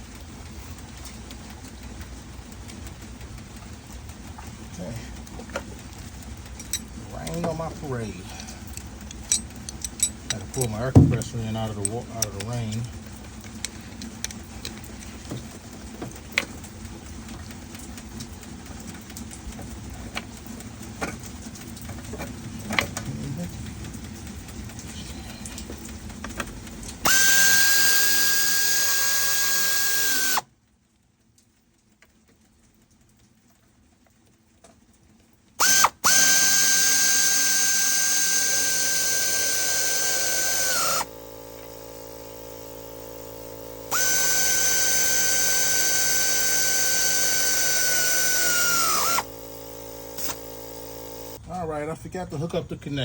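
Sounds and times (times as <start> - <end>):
power tool whining: 27.0 - 30.5, 35.6 - 51.4.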